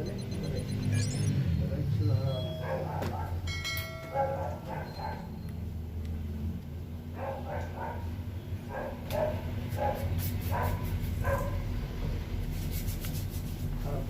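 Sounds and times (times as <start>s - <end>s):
steady low hum: 0.0s - 4.6s.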